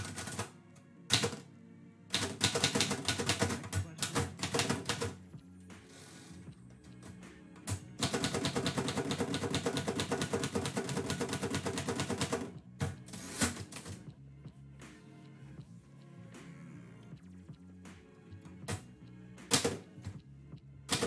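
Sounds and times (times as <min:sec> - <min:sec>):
typewriter keystrokes: 0:00.0 - 0:00.5, 0:01.1 - 0:01.4, 0:02.1 - 0:05.2, 0:07.7 - 0:12.5, 0:19.5 - 0:19.8
background music: 0:00.0 - 0:21.0.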